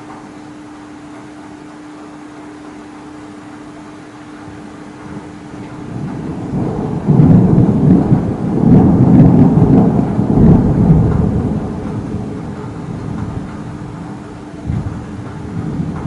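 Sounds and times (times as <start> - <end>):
thunder rumbling: 4.2 - 16.0.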